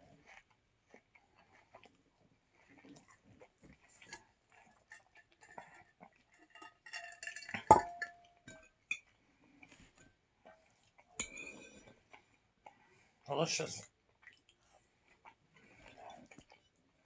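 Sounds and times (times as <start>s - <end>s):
tableware clinking: 6.6s - 8.7s.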